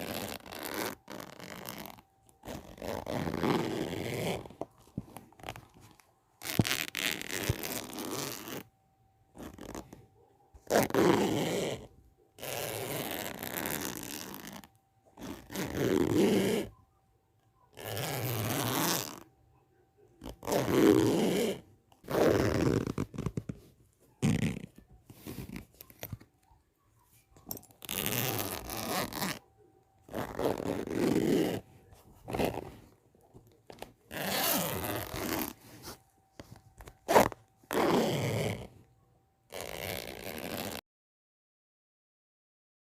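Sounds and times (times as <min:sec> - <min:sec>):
zipper being pulled open: 0:00.0 - 0:08.7, 0:09.4 - 0:09.9, 0:10.6 - 0:16.7, 0:17.7 - 0:19.3, 0:20.2 - 0:26.2, 0:27.5 - 0:29.4, 0:30.1 - 0:31.6, 0:32.2 - 0:33.0, 0:33.8 - 0:38.7, 0:39.5 - 0:40.8.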